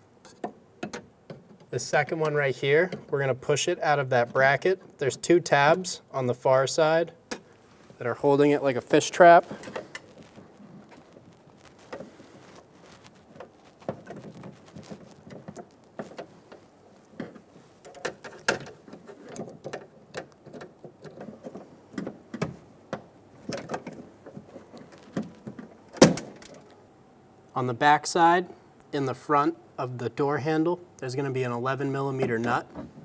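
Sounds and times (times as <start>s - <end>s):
taps and rustles: 9.5s - 26.7s.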